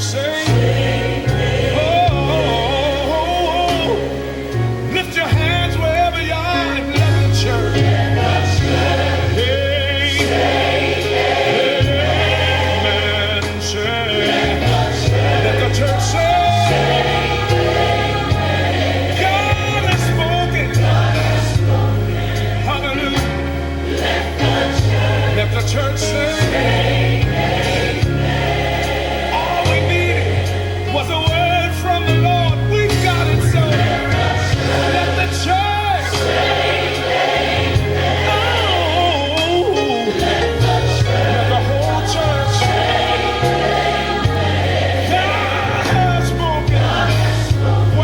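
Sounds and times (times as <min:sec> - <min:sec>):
gospel choir singing: 0:00.0 - 0:48.0
instrumental backing: 0:00.0 - 0:48.0
steady bass line: 0:00.0 - 0:48.0.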